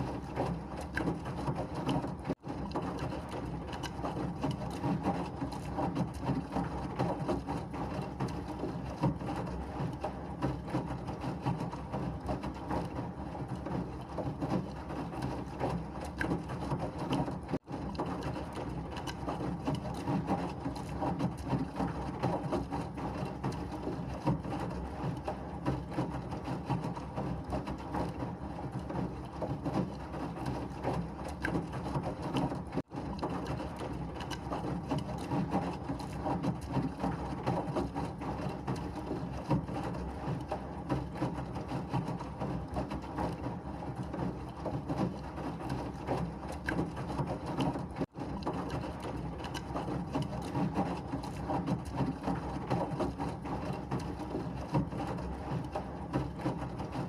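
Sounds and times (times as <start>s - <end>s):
washing machine churning: 0.0s - 57.0s.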